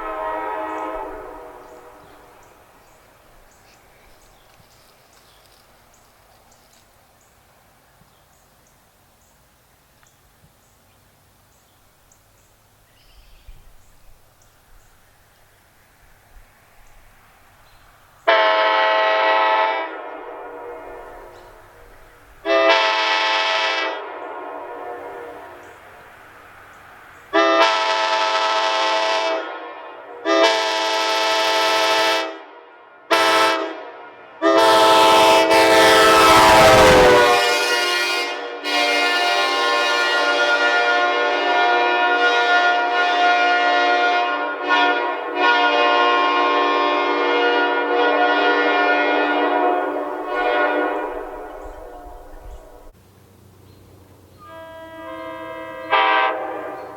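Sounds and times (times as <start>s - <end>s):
train air horn blasts: 0.0s - 2.9s, 18.2s - 25.9s, 27.3s - 52.9s, 54.4s - 56.9s
rustle with low thump: 3.5s - 8.3s.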